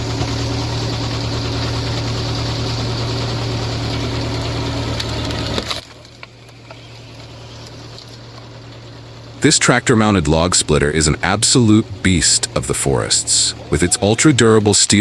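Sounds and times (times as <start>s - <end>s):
wood being shredded: 0.0s - 9.4s
wood chipper engine: 0.0s - 15.0s.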